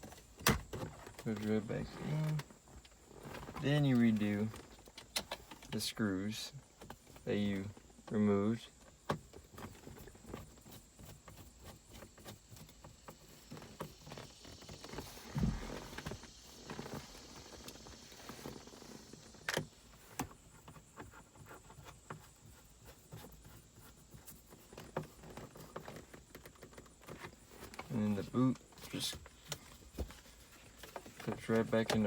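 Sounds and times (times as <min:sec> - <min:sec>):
low thump: 0:15.3 - 0:16.0.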